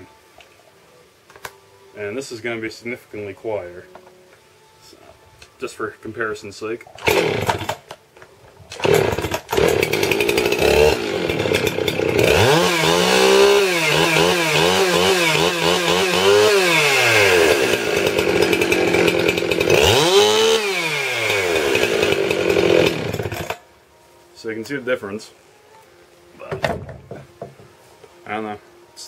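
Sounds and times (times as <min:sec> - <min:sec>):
chainsaw idling and revving: 0:07.0 - 0:07.9, 0:08.7 - 0:23.6.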